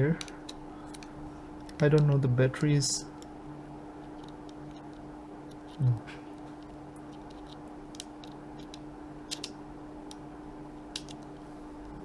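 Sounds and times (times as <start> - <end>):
steady low hum: 0.0 - 12.0
murmured voice: 5.8 - 6.2.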